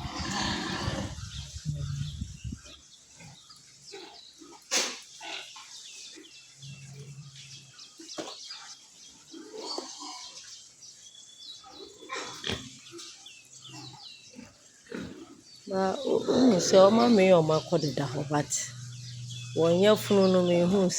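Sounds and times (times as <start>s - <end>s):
pigs grunting and squealing: 0.0s - 2.4s, 9.3s - 10.5s, 11.6s - 18.8s.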